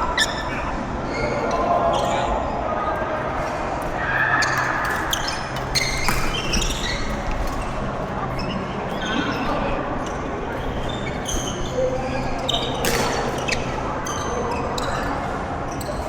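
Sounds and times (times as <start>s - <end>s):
shoes squeaking on court floor: 4.4s - 16.0s
racket hitting shuttlecock: 12.8s - 13.3s.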